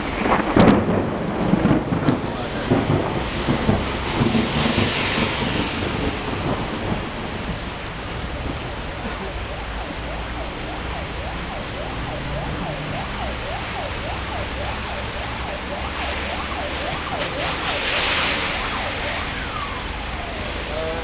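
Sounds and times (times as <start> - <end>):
heavy rain hissing: 0.0 - 21.0
electronic siren whooping: 8.2 - 21.0.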